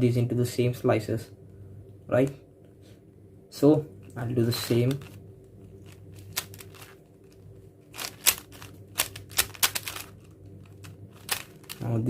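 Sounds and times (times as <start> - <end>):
puzzle cube plastic clacking: 4.7 - 11.9.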